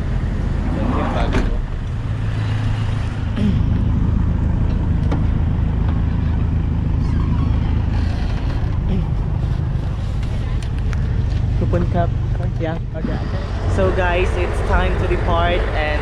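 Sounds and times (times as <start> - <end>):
large engine droning: 0.0 - 16.0.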